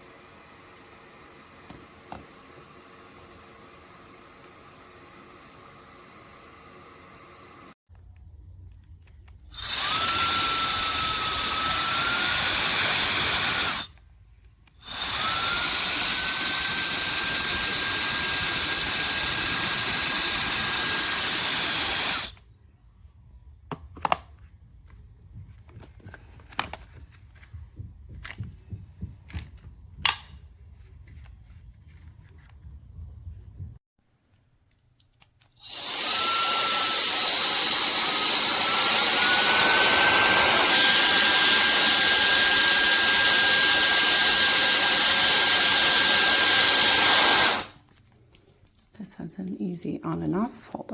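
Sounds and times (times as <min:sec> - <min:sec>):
hair dryer blowing: 0:00.0 - 0:07.8, 0:09.6 - 0:13.9, 0:14.8 - 0:22.4, 0:35.6 - 0:47.8.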